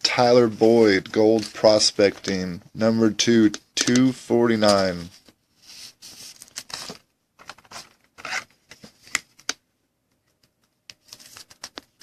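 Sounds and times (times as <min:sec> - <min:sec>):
cards rubbing and scraping: 0:04.6 - 0:09.2.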